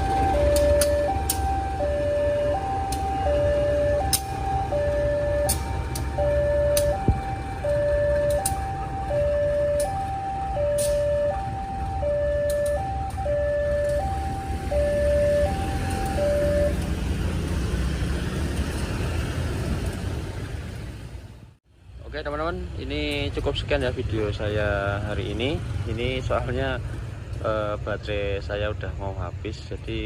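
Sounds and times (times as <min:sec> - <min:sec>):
two-tone electronic warning alarm: 0:00.0 - 0:16.9.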